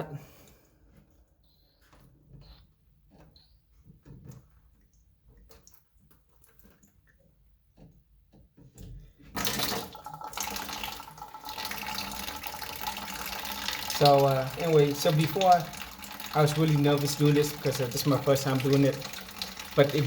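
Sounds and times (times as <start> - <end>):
water running from tap: 9.4 - 20.0.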